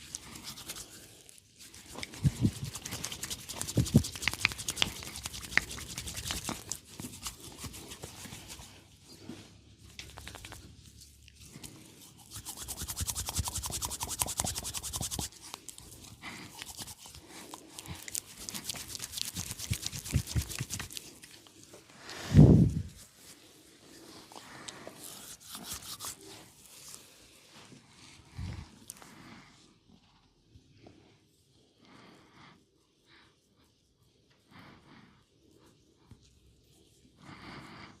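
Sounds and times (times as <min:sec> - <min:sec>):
oiled hands rubbing on skin: 0:00.0 - 0:29.4.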